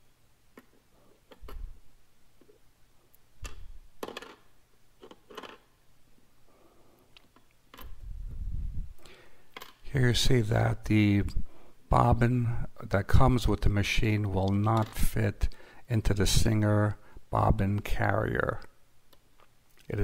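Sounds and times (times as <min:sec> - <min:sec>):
metal bobbins clicking and tapping: 0:03.4 - 0:05.7, 0:09.5 - 0:09.8
low rumble: 0:08.0 - 0:09.0.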